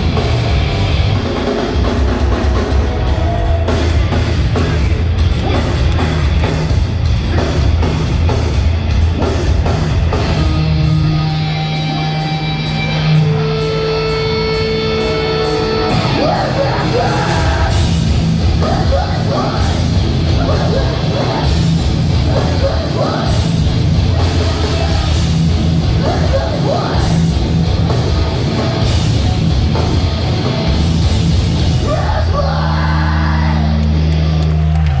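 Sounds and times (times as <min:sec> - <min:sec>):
live metal band playing: 0:00.0 - 0:34.9
sung and shouted vocals: 0:16.0 - 0:27.3, 0:31.8 - 0:34.0.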